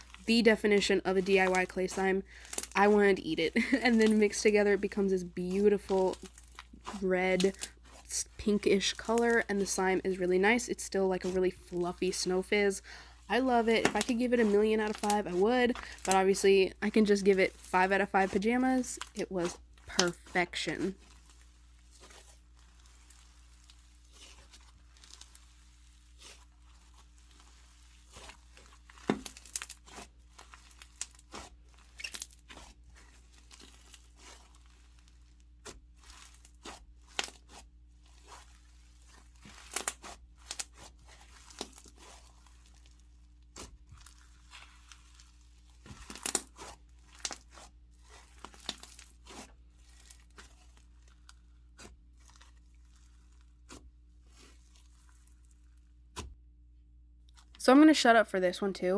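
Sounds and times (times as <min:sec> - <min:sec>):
slime crackling and popping: 0:00.0 - 0:09.8, 0:13.6 - 0:56.3.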